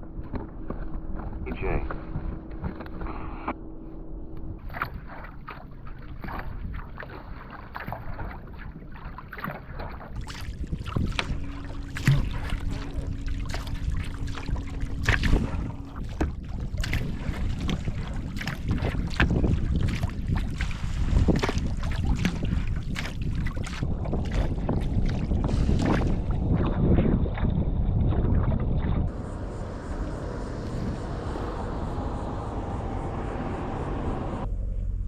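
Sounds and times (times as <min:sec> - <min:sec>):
wind on microphone: 0:04.2 - 0:08.8, 0:09.9 - 0:35.0
paddle blades splashing: 0:04.6 - 0:29.2.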